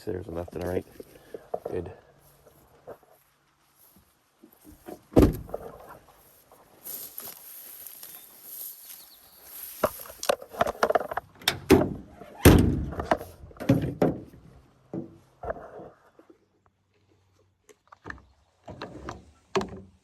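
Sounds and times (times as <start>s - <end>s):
irregular knocks and clunks: 4.5s - 6.0s, 9.8s - 15.9s, 17.9s - 20.0s.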